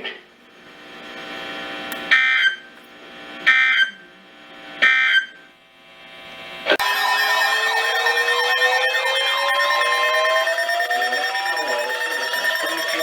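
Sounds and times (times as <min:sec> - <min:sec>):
wavering siren-like alarm: 0:06.7 - 0:13.0
harsh warbling data tones: 0:06.8 - 0:13.0.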